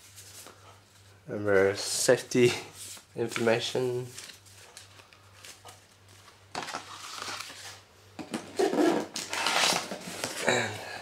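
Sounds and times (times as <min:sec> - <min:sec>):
cardboard and paper rustling: 0:02.7 - 0:07.8, 0:08.6 - 0:10.6.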